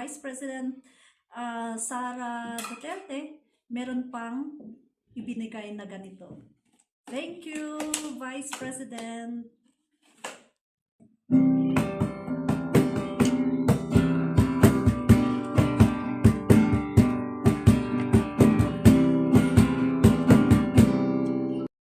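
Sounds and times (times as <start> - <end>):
strummed acoustic guitar: 11.3 - 21.7.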